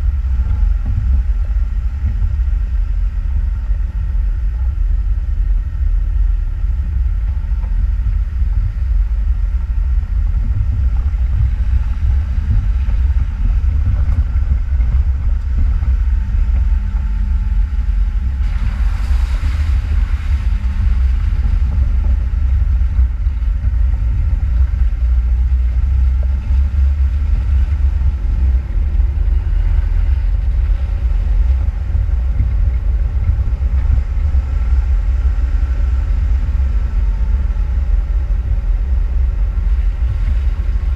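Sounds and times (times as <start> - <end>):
off-road vehicle engine rumble: 0.0 - 40.9.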